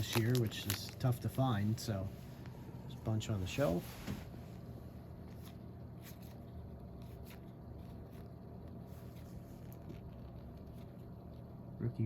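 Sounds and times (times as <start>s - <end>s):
packaging crinkling: 0.0s - 2.6s
steady low hum: 0.0s - 12.0s.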